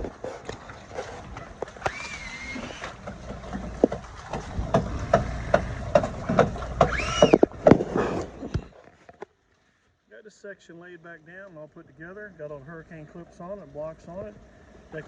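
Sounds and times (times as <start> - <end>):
low engine rumble: 0.0 - 8.8
construction knocks and clatter: 0.0 - 9.2.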